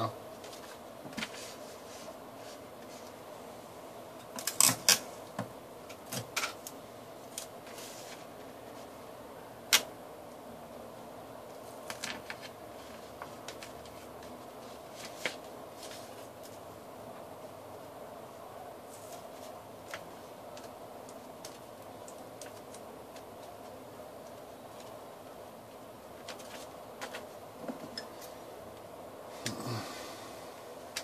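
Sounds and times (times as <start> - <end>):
faint steady hum: 0.0 - 31.0
paper and tape crinkling: 11.6 - 16.6, 26.2 - 27.4.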